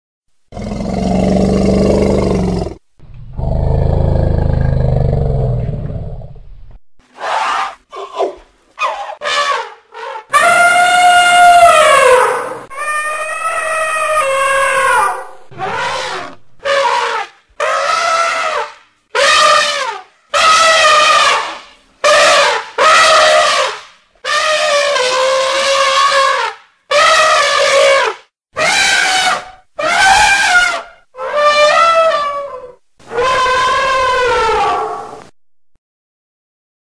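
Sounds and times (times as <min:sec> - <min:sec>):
elephant trumpeting: 0:07.2 - 0:35.2.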